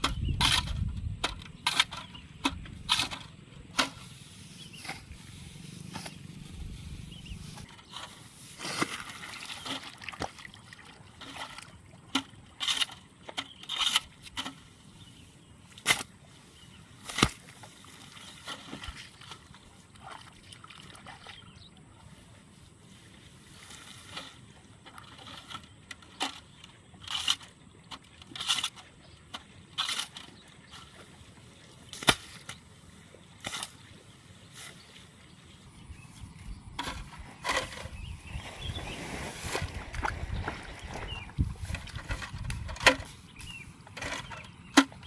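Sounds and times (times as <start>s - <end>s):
water and mud splashing: 0.0s - 45.0s.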